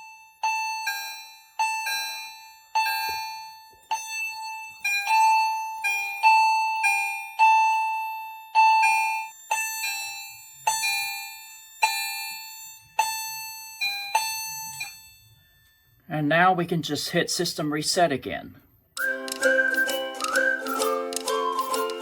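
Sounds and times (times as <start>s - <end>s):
electronic two-note fire alarm chime: 0.0s - 16.0s.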